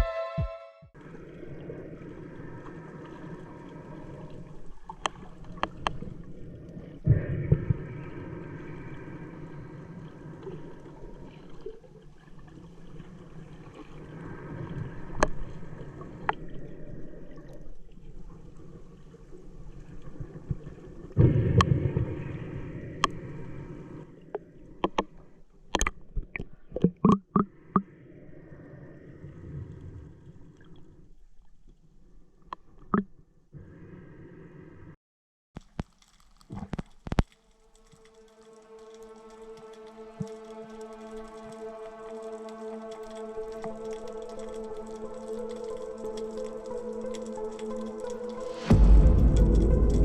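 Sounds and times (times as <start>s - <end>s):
low rush of water: 1.0s - 25.4s, 37.2s - 50.0s.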